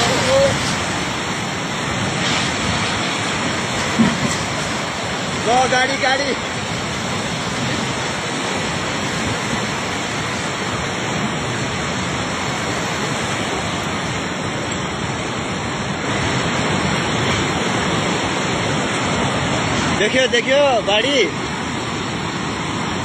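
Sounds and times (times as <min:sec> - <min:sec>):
floodwater rushing: 0:00.0 - 0:23.0.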